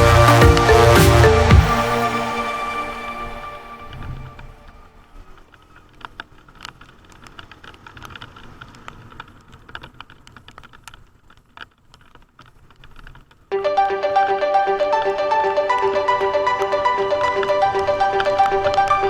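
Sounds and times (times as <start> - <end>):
music: 0.0 - 4.5, 13.5 - 19.0.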